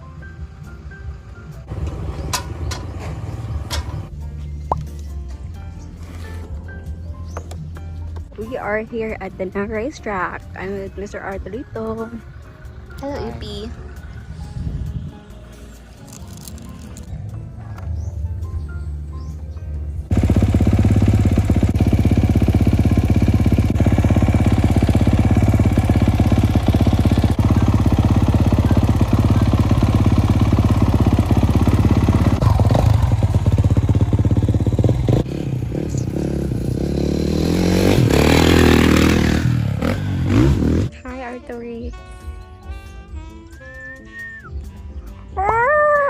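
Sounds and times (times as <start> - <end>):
dirt bike engine revving: 20.1 - 40.9.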